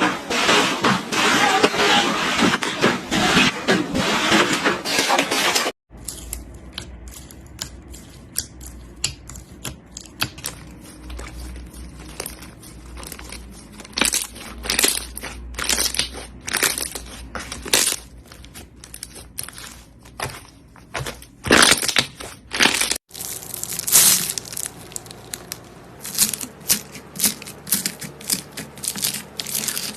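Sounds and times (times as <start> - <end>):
slime crackling and popping: 21.4 - 29.9.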